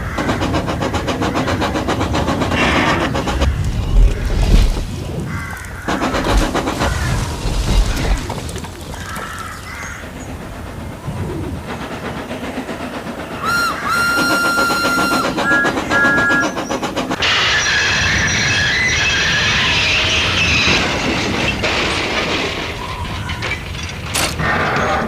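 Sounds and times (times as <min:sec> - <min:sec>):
clattering train wheels: 0:00.0 - 0:25.0
steam locomotive chuffing: 0:00.0 - 0:25.0
locomotive whistle blowing: 0:13.4 - 0:20.7
loud high screech: 0:17.2 - 0:20.6.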